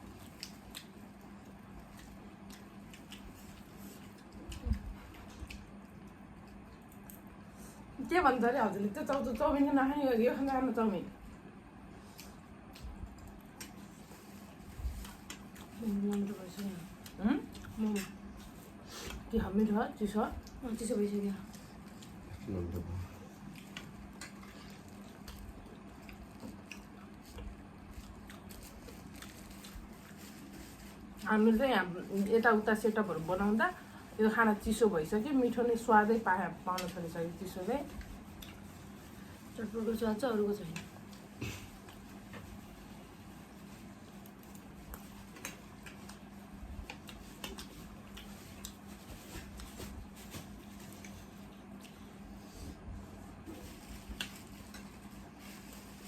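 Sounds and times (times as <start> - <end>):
faint steady hum: 0.0 - 56.0
wet chewing: 0.1 - 7.3, 21.4 - 30.8, 44.2 - 52.2.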